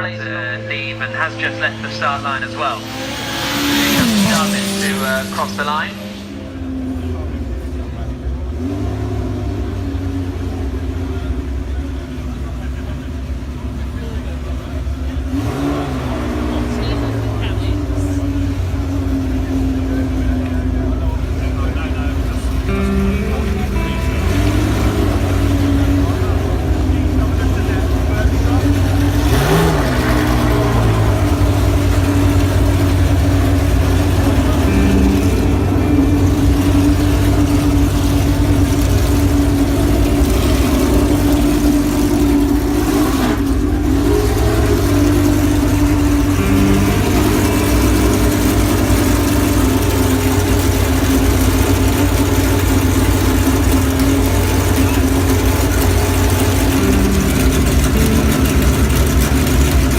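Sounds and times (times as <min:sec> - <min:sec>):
car engine running: 0:00.0 - 0:59.9.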